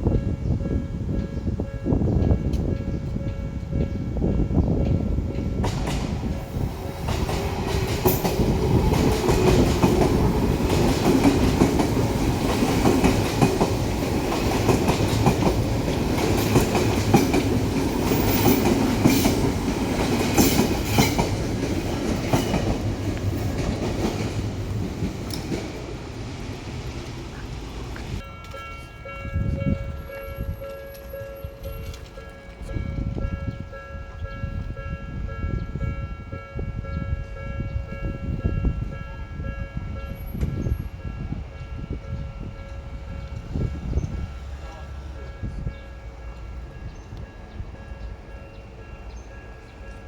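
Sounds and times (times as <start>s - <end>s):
electric train passing: 0.0s - 50.0s
train wheels clacking over rail joints: 7.0s - 28.2s.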